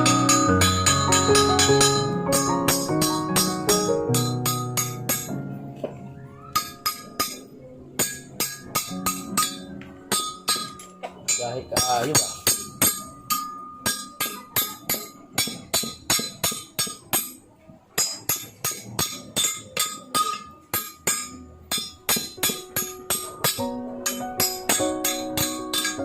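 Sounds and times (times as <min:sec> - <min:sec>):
sustained pitched notes: 0:00.0 - 0:06.9.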